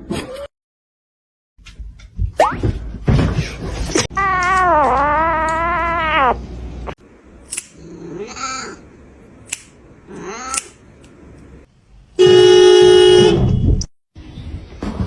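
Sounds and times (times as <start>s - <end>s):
cat meowing: 4.1s - 6.5s
sharp clicks: 7.4s - 7.8s, 9.4s - 9.8s, 10.5s - 11.5s.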